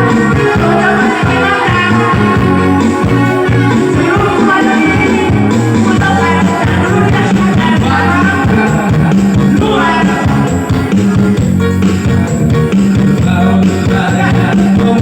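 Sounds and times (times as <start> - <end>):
song with singing and heavy bass: 0.0 - 15.0.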